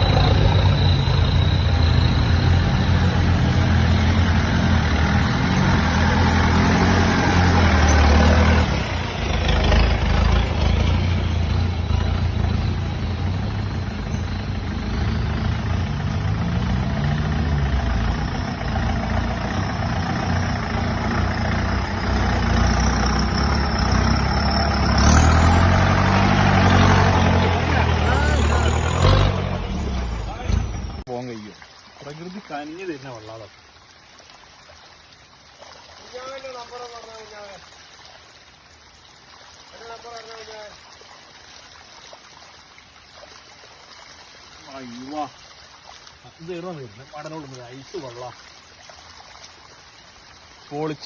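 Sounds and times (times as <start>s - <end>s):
vehicle engine driving off-road: 0.0s - 33.6s.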